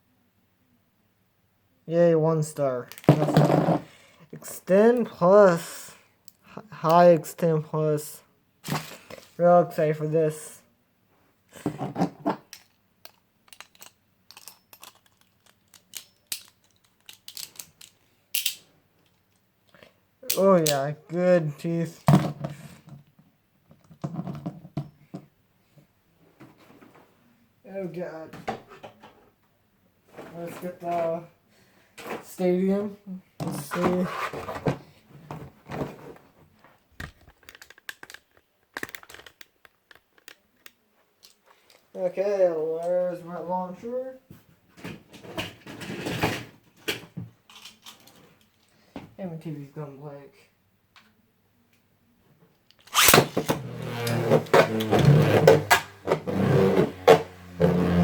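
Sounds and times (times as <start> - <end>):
plastic parts clicking: 2.9 - 3.2, 12.5 - 20.8, 37.0 - 41.8.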